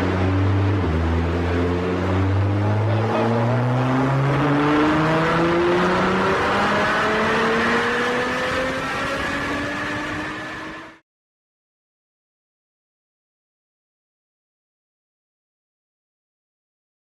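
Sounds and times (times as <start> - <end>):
sports car engine accelerating: 0.0 - 11.0.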